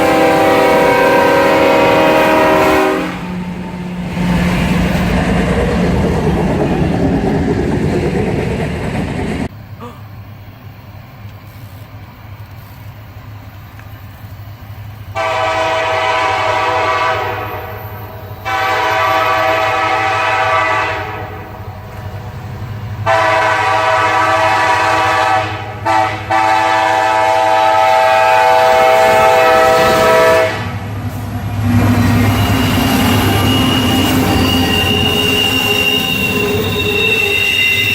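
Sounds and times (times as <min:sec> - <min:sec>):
locomotive air horn blasts: 0:00.0 - 0:03.4, 0:15.2 - 0:21.5, 0:23.0 - 0:30.8, 0:32.4 - 0:37.9
train rumbling: 0:00.0 - 0:37.9.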